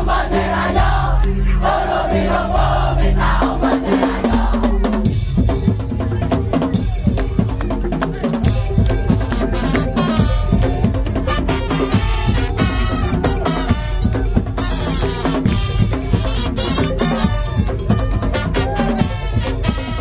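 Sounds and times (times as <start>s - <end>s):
percussion ensemble drums: 0.0s - 20.0s.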